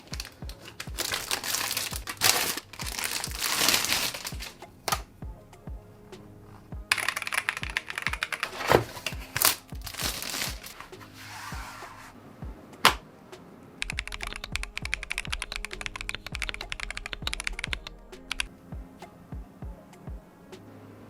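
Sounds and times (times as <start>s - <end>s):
faint background music: 0.0s - 21.0s
mechanical keyboard typing: 6.9s - 10.6s, 13.8s - 18.5s.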